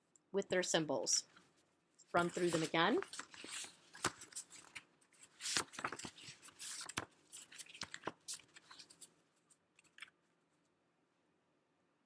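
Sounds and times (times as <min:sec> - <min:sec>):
handling rustling: 0:01.3 - 0:10.1.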